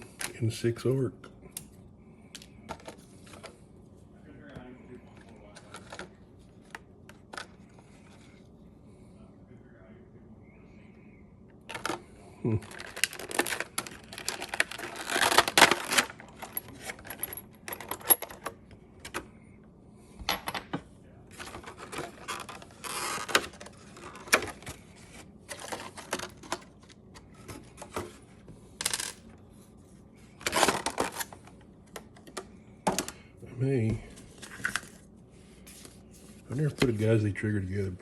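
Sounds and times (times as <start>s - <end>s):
packaging rustling: 11.7s - 17.2s, 21.3s - 28.2s, 30.4s - 31.6s.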